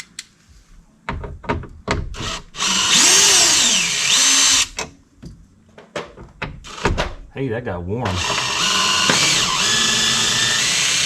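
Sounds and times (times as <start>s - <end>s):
cordless power driver running: 2.2s - 4.8s, 8.1s - 11.0s.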